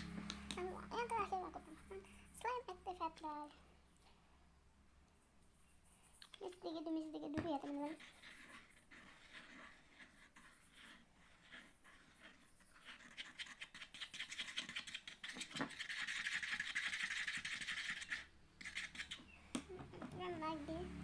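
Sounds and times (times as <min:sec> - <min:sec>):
stirrer scraping a container: 0:07.2 - 0:19.4.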